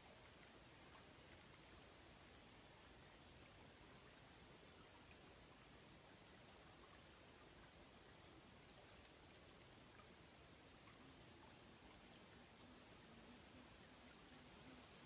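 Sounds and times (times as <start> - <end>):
insects trilling: 0.0 - 15.0
faint click: 8.9 - 10.1.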